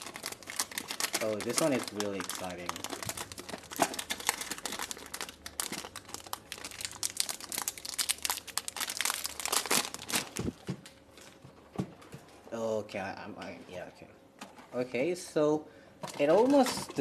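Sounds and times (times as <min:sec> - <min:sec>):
packaging crinkling and rustling: 0:00.0 - 0:11.4, 0:16.0 - 0:17.0.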